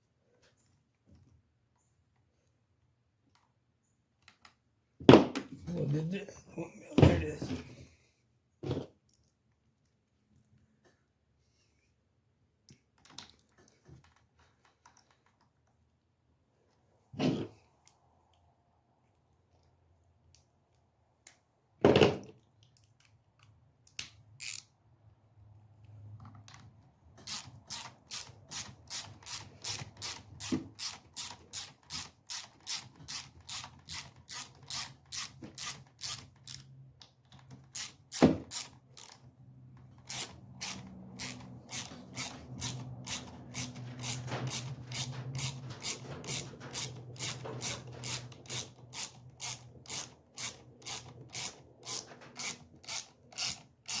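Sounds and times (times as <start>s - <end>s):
ratchet wrench clicking: 24.0s - 24.7s, 27.2s - 36.7s, 37.6s - 39.2s, 40.0s - 54.0s.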